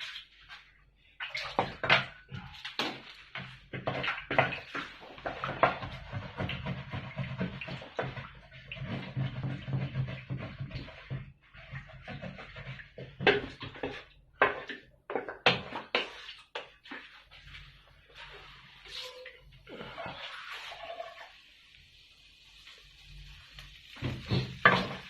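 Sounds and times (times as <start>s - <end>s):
utensils and cookware clattering: 1.4s - 17.6s, 23.9s - 25.0s.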